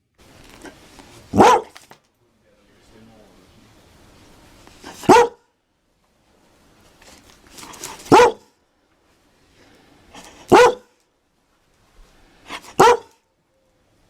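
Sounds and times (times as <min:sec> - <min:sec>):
soft sound before bark: 0:00.6 - 0:02.0, 0:07.6 - 0:08.6, 0:10.2 - 0:11.0, 0:12.5 - 0:13.8
dog barking: 0:01.3 - 0:01.8, 0:04.8 - 0:05.5, 0:08.0 - 0:08.6, 0:10.2 - 0:11.0, 0:12.5 - 0:13.2.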